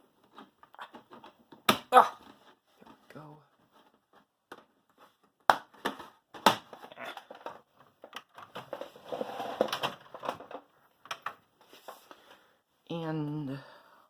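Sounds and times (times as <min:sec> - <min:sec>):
rattling and scraping: 0:06.9 - 0:10.7.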